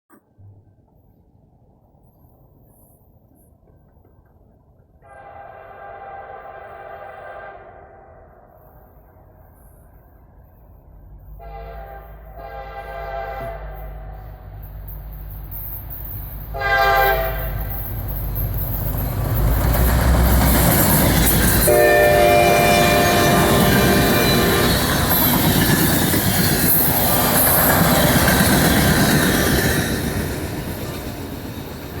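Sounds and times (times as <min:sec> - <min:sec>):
train wheels on rails: 0:00.1 - 0:07.1, 0:08.4 - 0:32.0
locomotive air horn blasts: 0:05.0 - 0:08.3, 0:11.4 - 0:14.4, 0:16.5 - 0:17.7, 0:21.6 - 0:25.0
locomotive engine rumbling: 0:10.8 - 0:32.0.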